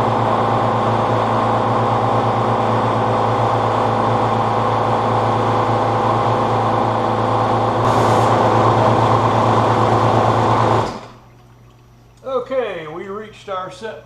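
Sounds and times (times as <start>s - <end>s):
air compressor running: 0.0s - 11.2s
air hiss: 7.8s - 8.5s.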